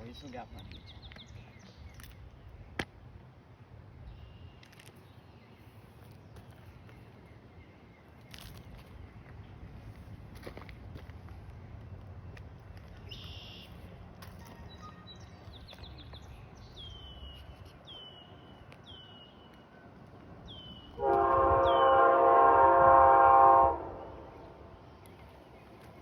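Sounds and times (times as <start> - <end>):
bird chirping: 12.7 - 19.7
train air horn blast: 21.0 - 24.6.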